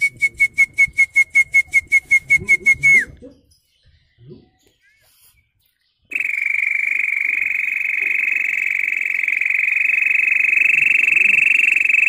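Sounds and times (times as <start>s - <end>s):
person whistling birdsong: 0.0s - 3.2s.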